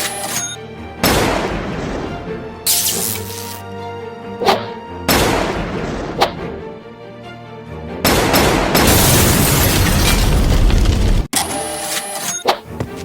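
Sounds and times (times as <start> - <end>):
background music: 0.0 - 9.6.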